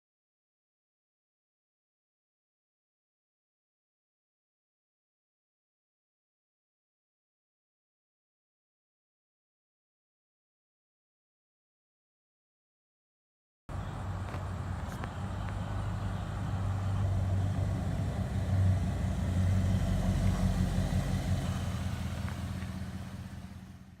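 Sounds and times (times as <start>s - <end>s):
car engine running with deep hum: 13.7s - 24.0s.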